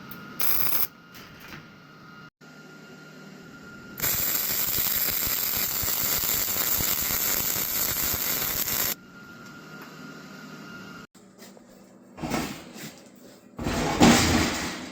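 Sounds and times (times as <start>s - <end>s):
welding arc crackling: 0.4s - 0.9s, 4.0s - 9.0s.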